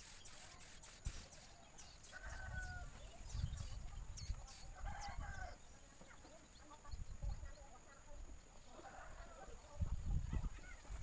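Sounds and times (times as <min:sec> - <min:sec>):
thin high chirps: 0:00.0 - 0:04.7.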